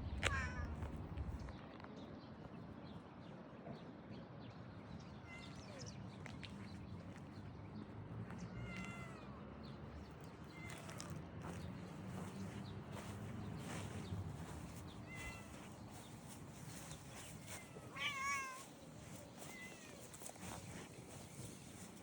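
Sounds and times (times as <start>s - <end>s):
cat meowing faintly: 0.2s - 0.8s, 8.4s - 9.4s, 15.0s - 15.8s, 17.4s - 18.7s, 19.4s - 20.1s.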